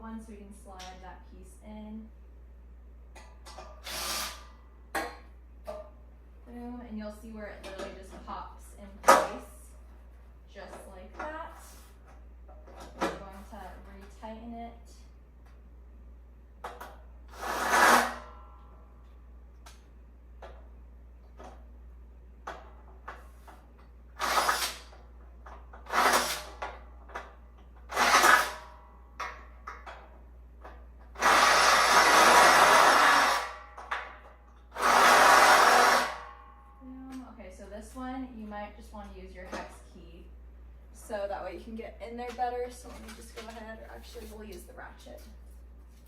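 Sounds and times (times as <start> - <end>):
power drill spinning: 3.8 - 4.5, 17.3 - 18.3, 24.2 - 24.9, 25.8 - 26.6, 27.9 - 28.7, 31.2 - 33.6, 34.7 - 36.2.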